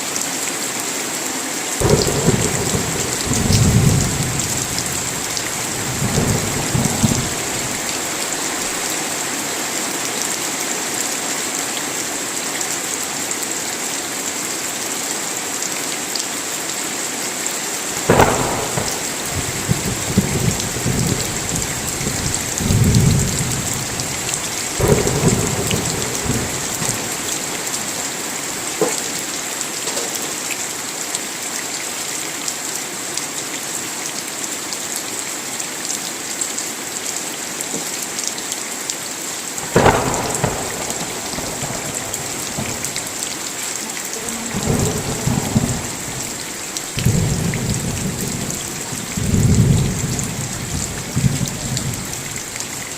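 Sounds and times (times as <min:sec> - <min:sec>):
steady rain: 0:00.0 - 0:52.9
thunder clap and rumble: 0:01.8 - 0:08.9, 0:18.0 - 0:29.3, 0:39.6 - 0:43.4, 0:44.1 - 0:52.6.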